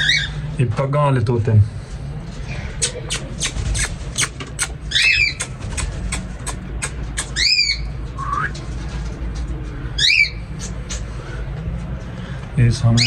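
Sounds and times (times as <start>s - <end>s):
parrots squawking: 0.0s - 0.5s, 2.5s - 8.0s, 10.0s - 11.4s
steady low hum: 0.0s - 13.0s.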